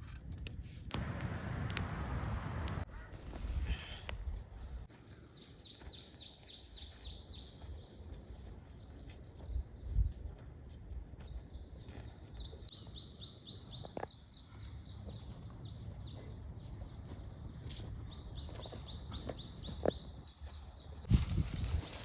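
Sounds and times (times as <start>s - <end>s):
bird chirping: 11.2s - 22.0s.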